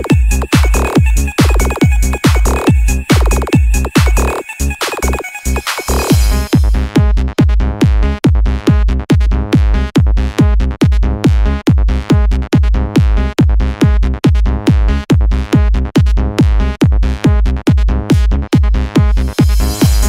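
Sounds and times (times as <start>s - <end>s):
heavy kick drum: 0.0s - 4.4s, 6.0s - 20.0s
electronic dance music: 0.0s - 7.5s, 13.0s - 20.0s.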